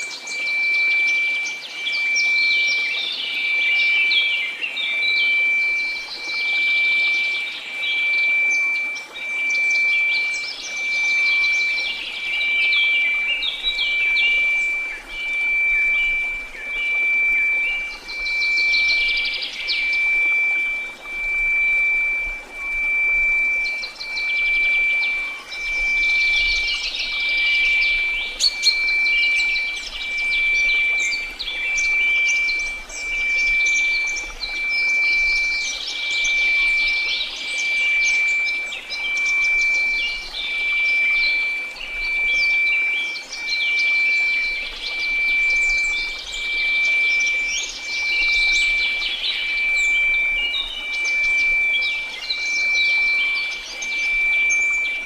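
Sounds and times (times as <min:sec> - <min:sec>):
birdsong chirping: 0:00.0 - 0:55.0
steady sine tone: 0:00.0 - 0:55.0.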